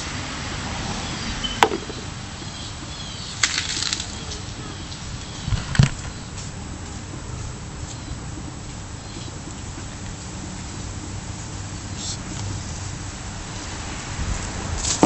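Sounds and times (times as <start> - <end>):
steady outdoor hiss: 0.0 - 15.0
hands sorting through soil: 3.3 - 4.5
potatoes dropping into bucket: 3.4 - 4.2.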